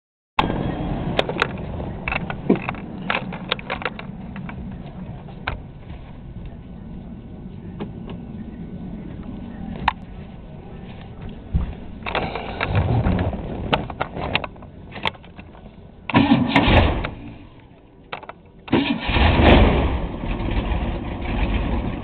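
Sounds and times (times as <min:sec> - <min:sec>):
boat engine idling rumble: 0:00.4 - 0:22.0
sharp clicks and knocks: 0:01.2 - 0:05.6, 0:11.6 - 0:18.8.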